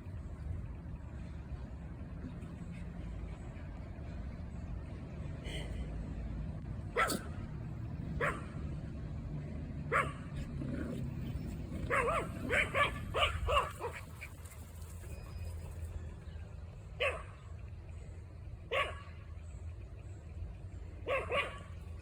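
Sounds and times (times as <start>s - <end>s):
small dogs barking and yipping: 6.9s - 7.5s, 8.1s - 8.7s, 9.8s - 16.0s, 17.0s - 17.5s, 18.7s - 19.2s, 21.0s - 22.0s.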